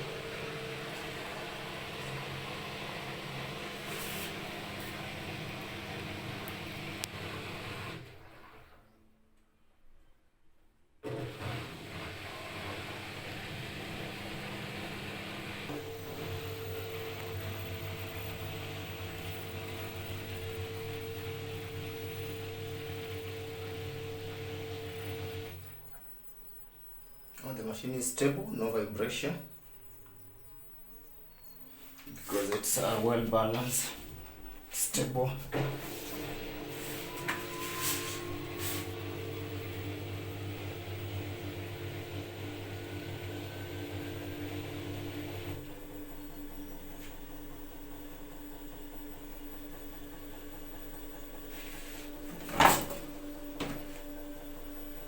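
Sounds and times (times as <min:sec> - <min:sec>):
washing machine drum spinning: 0:11.2 - 0:25.6, 0:35.5 - 0:55.0
motor whine: 0:12.0 - 0:25.8, 0:33.2 - 0:55.0.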